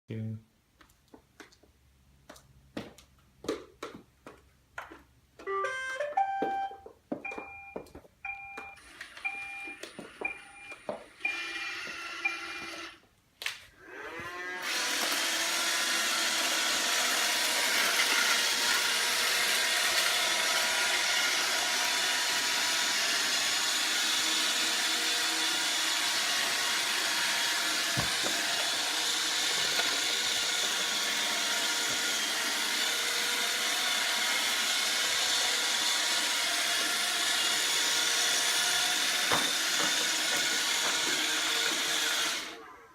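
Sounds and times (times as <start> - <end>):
short beeps: 5.5 - 11.5
robot vacuum motor whirring: 8.8 - 13.0, 13.8 - 42.9.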